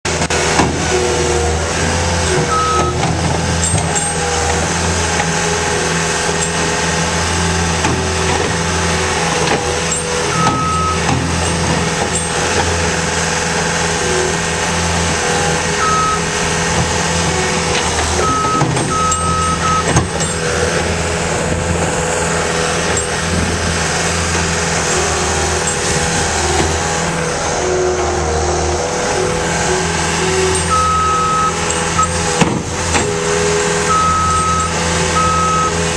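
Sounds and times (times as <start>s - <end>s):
diesel engine running: 0.0s - 35.9s
backup alarm beeps: 2.5s - 3.0s, 10.3s - 11.0s, 15.8s - 16.3s, 18.2s - 20.1s, 30.7s - 32.2s, 33.9s - 35.8s.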